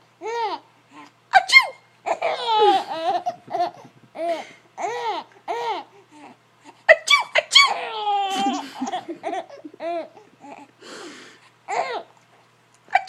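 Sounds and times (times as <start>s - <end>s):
baby laughing: 1.3s - 5.9s, 6.9s - 10.6s.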